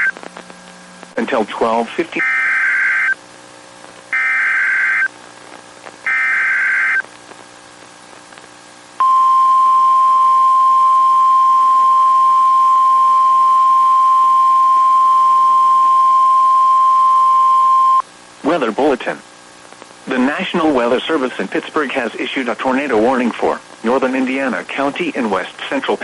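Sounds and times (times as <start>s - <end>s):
steady warning alarm tone: 2.2s - 3.2s, 4.2s - 5.1s, 6.1s - 7.0s.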